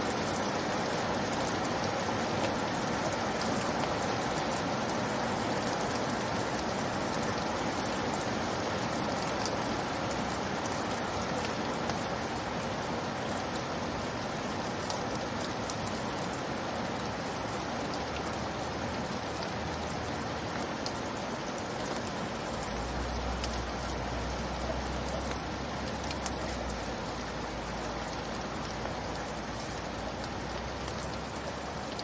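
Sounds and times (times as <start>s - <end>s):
steady rainfall: 0.0s - 32.0s
raindrop ticks: 0.1s - 32.0s.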